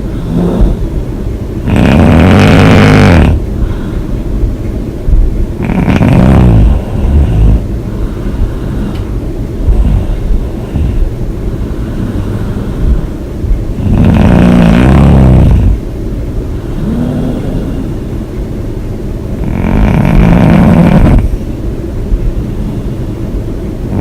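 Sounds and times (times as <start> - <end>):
quiet breathing: 0.0 - 2.2, 2.8 - 4.5, 6.5 - 14.6, 15.5 - 18.2, 22.2 - 24.0
woman snoring: 0.1 - 0.8, 1.6 - 3.4, 5.6 - 7.7, 13.8 - 15.8, 16.7 - 18.0, 19.4 - 21.4.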